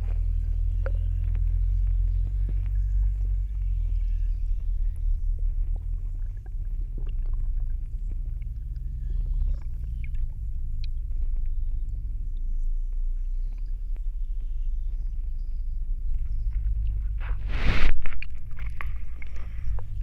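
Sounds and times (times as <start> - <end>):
small clicks and ticks: 0.0 - 17.2
underwater rumble of flowing water: 0.0 - 20.0.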